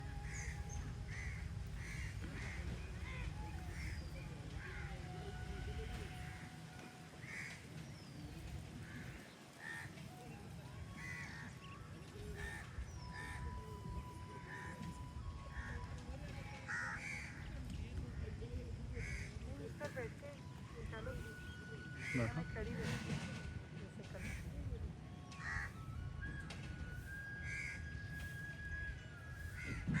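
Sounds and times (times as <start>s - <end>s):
birds whistling: 0.0s - 6.5s, 7.2s - 30.0s
steady low rumble: 0.0s - 6.6s
low rumble of wind: 0.0s - 30.0s
crows cawing: 0.2s - 0.5s, 1.1s - 5.0s, 7.2s - 7.7s, 8.8s - 10.1s, 10.9s - 11.6s, 12.4s - 13.6s, 14.4s - 15.8s, 16.6s - 17.4s, 18.9s - 19.5s, 22.0s - 22.9s, 24.2s - 24.5s, 25.3s - 25.8s, 27.4s - 27.8s, 29.6s - 30.0s.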